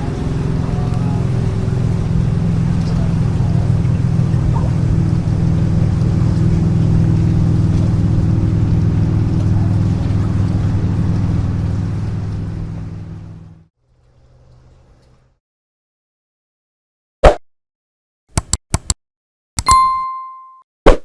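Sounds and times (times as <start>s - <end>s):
motorboat engine droning: 0.0s - 15.4s.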